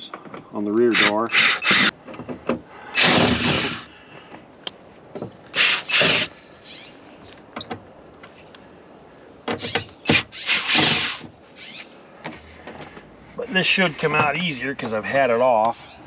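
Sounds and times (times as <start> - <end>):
power drill running: 3.0 - 3.9.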